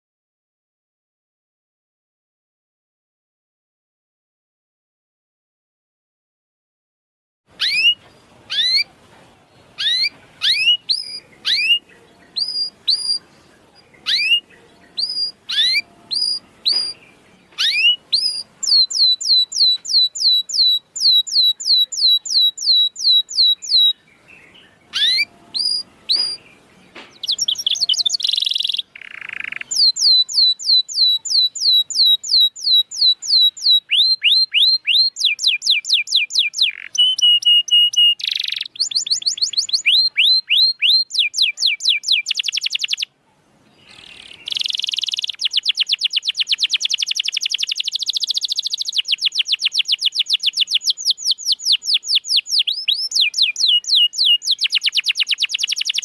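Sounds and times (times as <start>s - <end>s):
canary singing: 7.5s - 43.1s, 43.7s - 56.0s.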